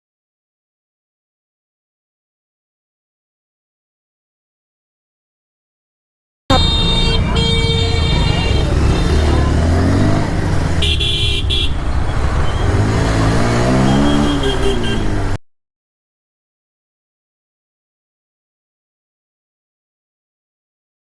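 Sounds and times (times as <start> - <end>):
car horns honking: 6.5 - 15.4
vehicle engines running: 6.5 - 15.4.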